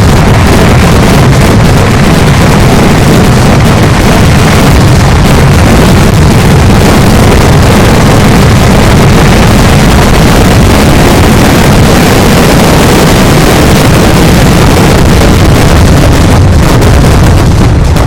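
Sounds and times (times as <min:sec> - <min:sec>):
fireworks exploding: 0:00.0 - 0:18.0.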